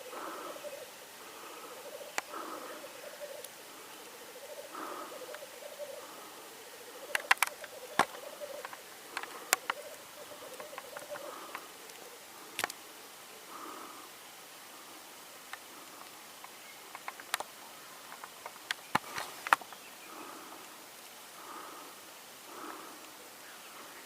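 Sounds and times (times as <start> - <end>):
grouse bubbling coo: 0.0 - 14.1.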